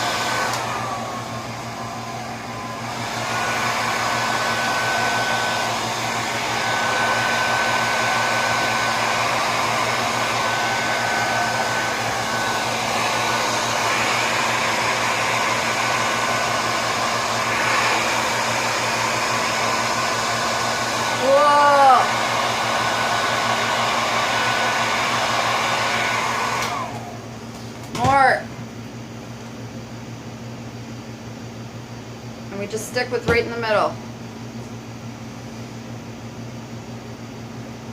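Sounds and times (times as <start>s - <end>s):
blow dryer whining: 0.0s - 28.3s, 32.5s - 34.0s.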